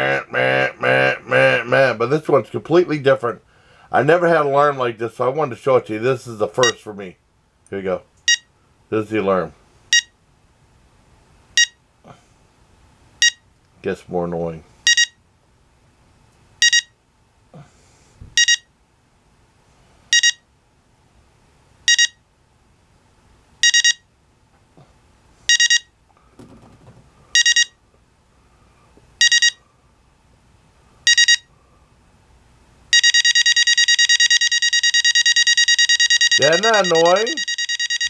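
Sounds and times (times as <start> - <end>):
alarm clock beeping: 9.9 - 10.1, 14.9 - 15.2, 16.6 - 16.9, 18.4 - 18.7, 20.1 - 20.4, 21.9 - 22.2, 23.6 - 24.0, 25.5 - 25.9, 27.4 - 27.8, 29.2 - 29.6, 31.1 - 31.5, 32.9 - 38.0.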